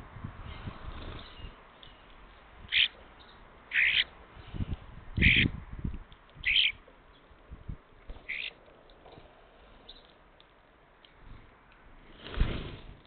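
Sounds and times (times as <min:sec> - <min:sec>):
bird calling: 0:02.7 - 0:04.1, 0:05.2 - 0:05.5, 0:06.4 - 0:07.3, 0:08.2 - 0:08.6.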